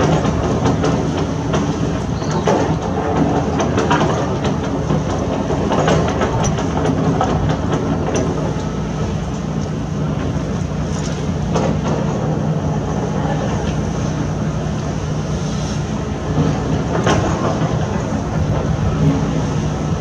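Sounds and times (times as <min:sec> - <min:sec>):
diesel engine running under load: 0:00.0 - 0:20.0.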